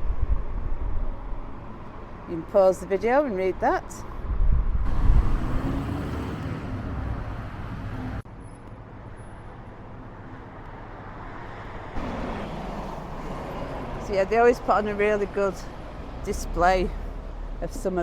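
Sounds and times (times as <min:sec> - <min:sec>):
steady traffic noise: 0:00.0 - 0:18.0
vehicle passing with low rumble: 0:04.1 - 0:14.1.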